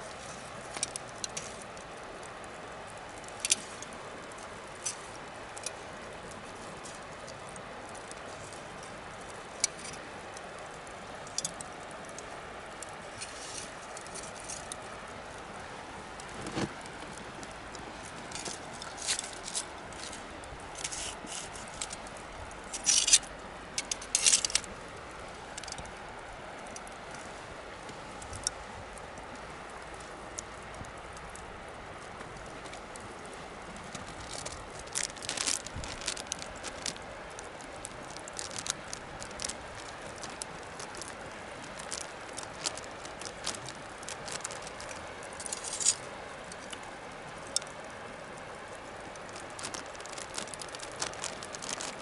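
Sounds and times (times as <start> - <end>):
bonfire crackling and popping: 0.0 - 52.0
steady background hiss: 0.0 - 52.0.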